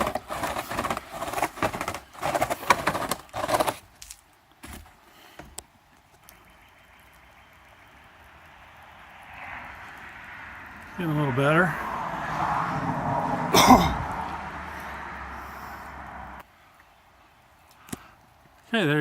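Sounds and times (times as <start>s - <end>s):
brush scrubbing wet siding: 0.0s - 3.9s.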